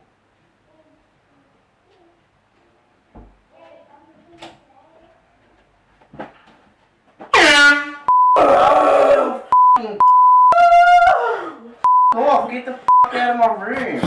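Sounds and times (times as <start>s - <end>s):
air horn blasting: 7.3s - 8.1s
high censor beeps: 8.1s - 8.4s, 9.6s - 10.6s, 11.9s - 12.2s
person yelling: 8.4s - 9.5s, 10.5s - 11.6s.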